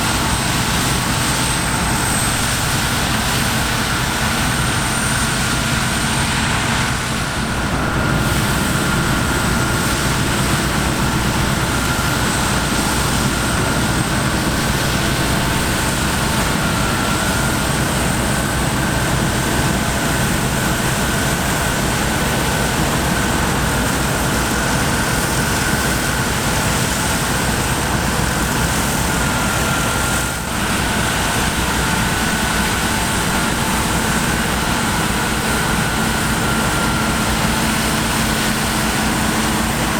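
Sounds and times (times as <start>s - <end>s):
diesel machinery drone: 0.0s - 39.9s
high machine whine: 0.0s - 39.9s.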